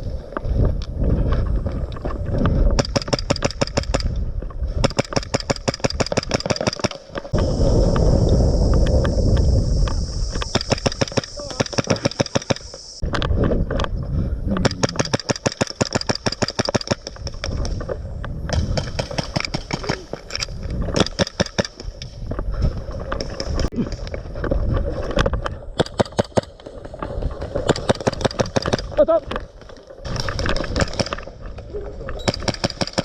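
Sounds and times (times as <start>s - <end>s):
steady hiss: 7.2s - 13.1s.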